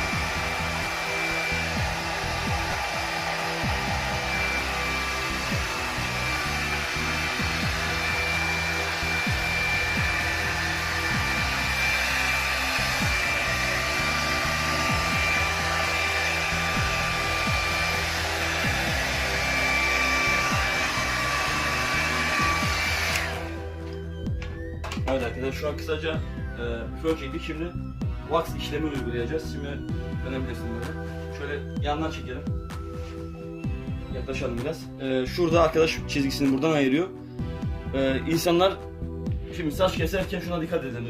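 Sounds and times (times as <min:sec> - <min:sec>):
hair dryer blowing: 0:00.0 - 0:25.5.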